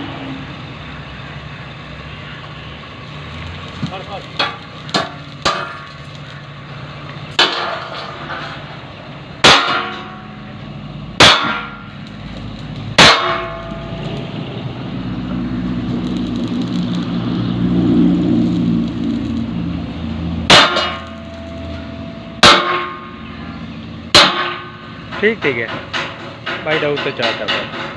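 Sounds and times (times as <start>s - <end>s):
hammer striking steel: 4.3s - 6.0s, 7.4s - 8.6s, 9.4s - 10.6s, 11.2s - 12.0s, 13.0s - 14.2s, 20.5s - 23.3s, 24.1s - 27.9s
low rumble: 12.5s - 22.5s.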